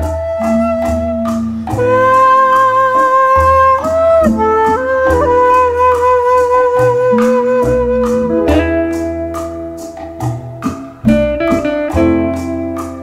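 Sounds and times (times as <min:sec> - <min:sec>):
slow wind instrument melody: 0:00.0 - 0:10.4
bass notes: 0:00.0 - 0:13.0
light percussion: 0:00.0 - 0:13.0.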